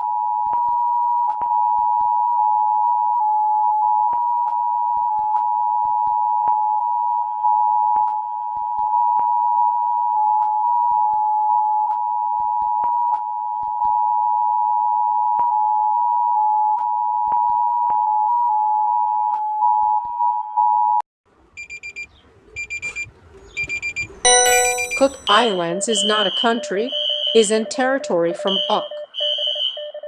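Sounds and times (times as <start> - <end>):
steady two-tone alarm: 23.8 - 30.0.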